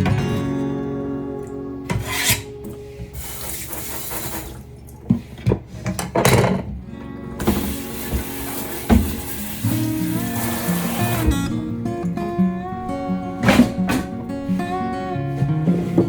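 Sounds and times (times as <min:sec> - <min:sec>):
soft acoustic guitar music: 0:00.0 - 0:16.0
scraping on wooden cutting board: 0:01.9 - 0:02.5.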